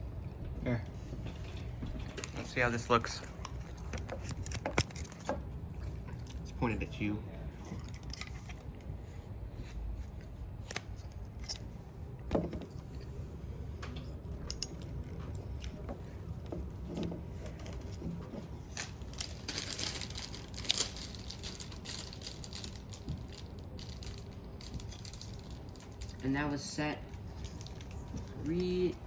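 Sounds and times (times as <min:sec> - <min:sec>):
low room hum: 0:00.0 - 0:29.0
objects clicking and rustling: 0:01.1 - 0:06.5, 0:07.6 - 0:08.9, 0:13.8 - 0:29.0.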